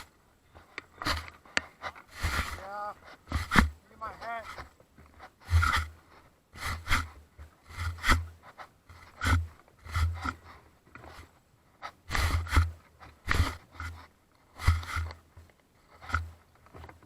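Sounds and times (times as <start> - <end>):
microphone handling thumps: 1.0 - 5.9.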